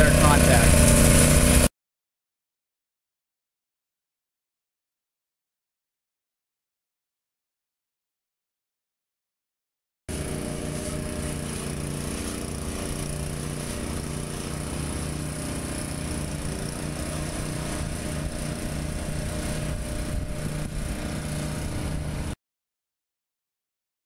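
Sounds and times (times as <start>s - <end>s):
small engine running: 0.0s - 1.7s, 10.1s - 22.4s.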